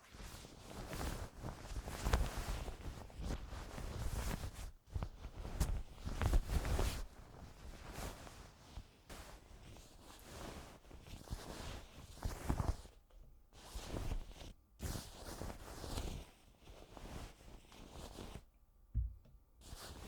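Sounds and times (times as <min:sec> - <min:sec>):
blankets rustling: 0:00.0 - 0:13.0, 0:13.6 - 0:18.4, 0:19.6 - 0:20.0
soft thump: 0:18.9 - 0:19.4.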